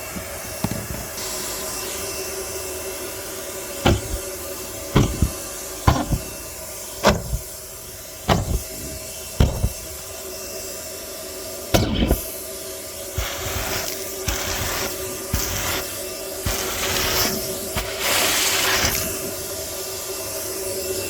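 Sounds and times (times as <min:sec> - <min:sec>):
loud knocks and rattles: 0:03.9 - 0:04.2, 0:05.0 - 0:06.4, 0:07.0 - 0:07.6, 0:08.3 - 0:10.0
vacuum cleaner humming: 0:03.9 - 0:04.2, 0:05.0 - 0:06.4, 0:13.2 - 0:15.9.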